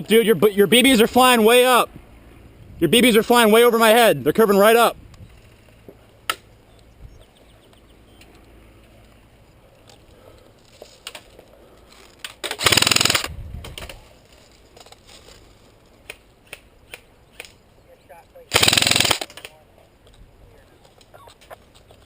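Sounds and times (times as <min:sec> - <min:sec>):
airsoft gun full-auto burst: 0:12.5 - 0:13.3, 0:18.5 - 0:19.3.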